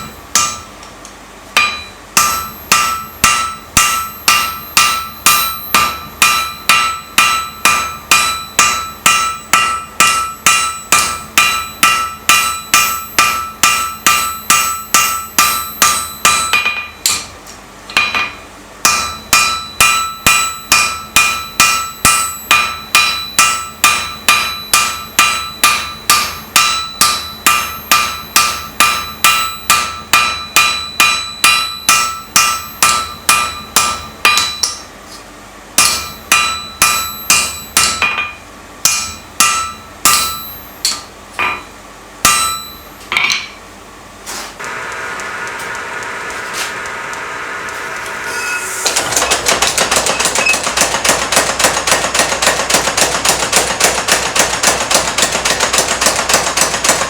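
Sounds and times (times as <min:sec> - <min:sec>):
hammer ringing on steel anvil: 0:00.0 - 0:00.9, 0:01.6 - 0:34.9, 0:35.8 - 0:43.6, 0:48.1 - 0:57.0
dense mechanical noise: 0:00.0 - 0:57.0
humming machine: 0:35.8 - 0:52.4.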